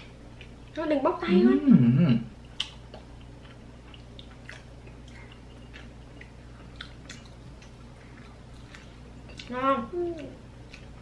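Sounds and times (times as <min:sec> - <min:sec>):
low steady hum: 0:00.0 - 0:11.0
people chewing: 0:02.4 - 0:11.0.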